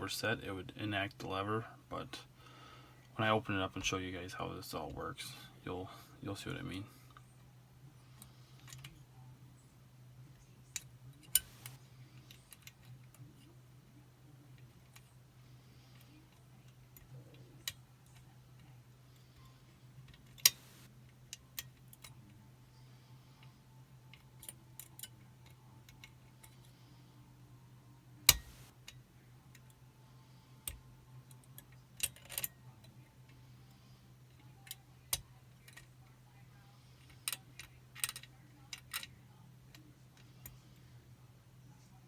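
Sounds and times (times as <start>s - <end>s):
low steady hum: 0.0s - 42.0s
lock pick clicks: 28.3s - 28.7s.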